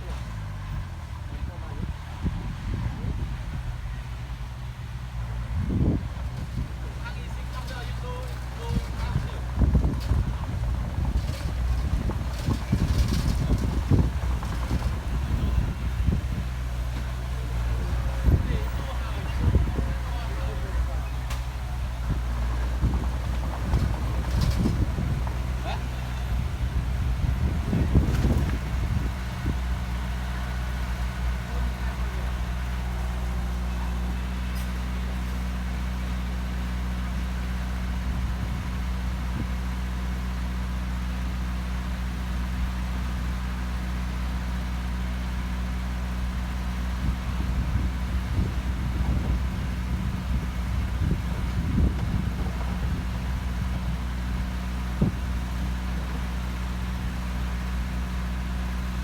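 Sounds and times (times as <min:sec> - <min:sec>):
diesel engine running: 0:00.0 - 0:59.0
irregular knocks and clatter: 0:21.2 - 0:25.6.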